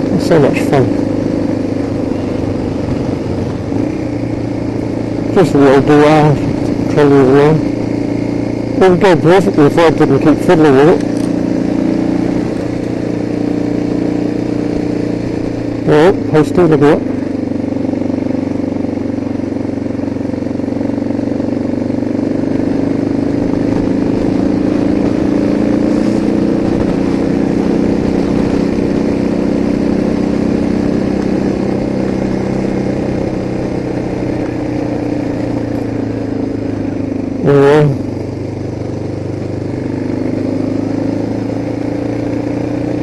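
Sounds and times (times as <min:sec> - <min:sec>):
motorcycle engine running: 0:00.0 - 0:43.0.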